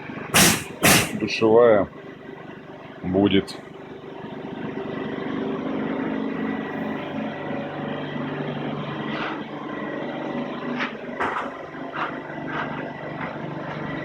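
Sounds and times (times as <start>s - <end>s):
steady engine drone: 0.0s - 14.0s
brief sharp sound: 0.4s - 1.2s.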